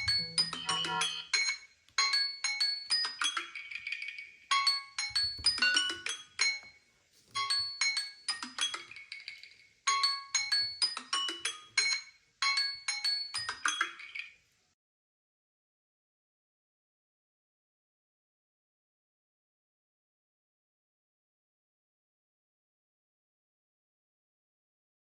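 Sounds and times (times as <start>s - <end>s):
phone alert chime tone: 0.0s - 1.5s.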